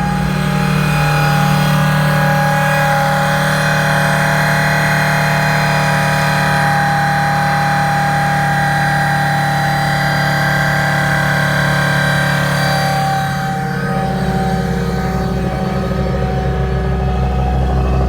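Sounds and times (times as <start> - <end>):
hydraulic pump whining: 0.0 - 17.6
truck engine running: 0.0 - 18.0.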